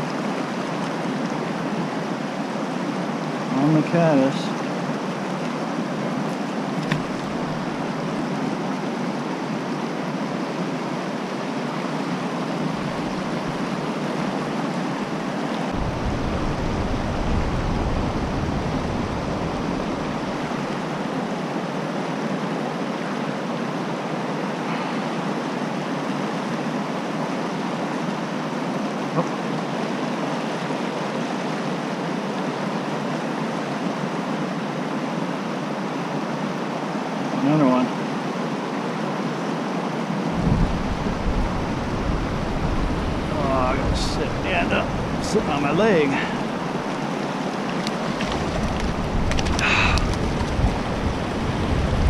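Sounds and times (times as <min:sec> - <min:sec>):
creek water rushing over rocks: 0:00.0 - 0:52.0.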